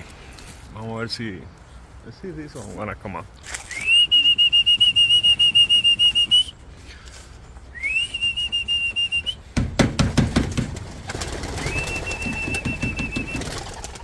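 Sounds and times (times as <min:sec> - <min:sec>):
trilling whistle blasts: 0:03.7 - 0:06.6, 0:07.7 - 0:09.4, 0:11.6 - 0:13.6
clatters and thumps: 0:09.6 - 0:11.3, 0:12.1 - 0:13.7.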